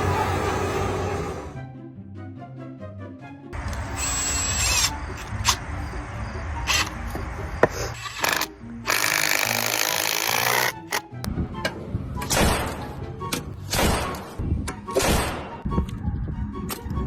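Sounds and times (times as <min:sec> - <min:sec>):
background music: 0:00.0 - 0:17.0
power tool running: 0:03.6 - 0:05.7, 0:08.0 - 0:11.0
sharp clicks: 0:08.0 - 0:11.1.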